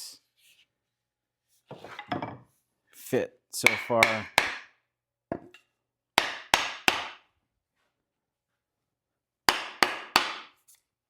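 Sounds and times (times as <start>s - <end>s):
hammer striking axe head: 3.6s - 4.7s, 6.2s - 7.2s, 9.5s - 10.5s.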